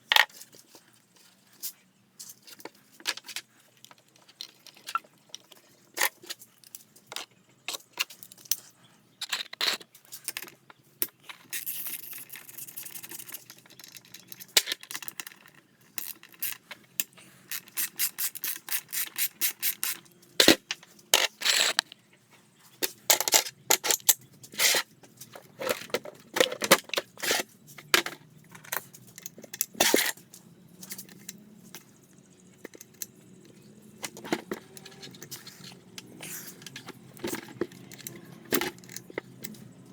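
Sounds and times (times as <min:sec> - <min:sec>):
metal parts clinking: 0:11.3 - 0:21.8, 0:23.1 - 0:39.9.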